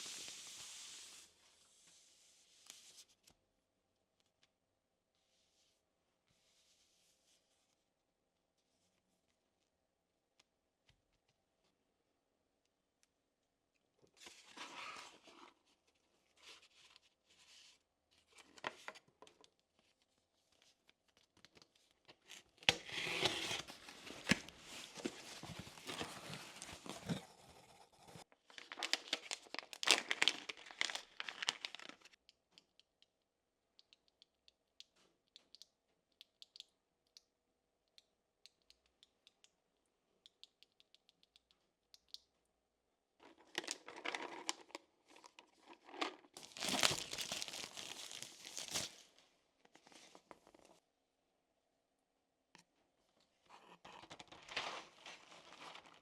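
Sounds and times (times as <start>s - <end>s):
packaging tearing and crinkling: 28.6s - 32.0s, 46.4s - 49.1s.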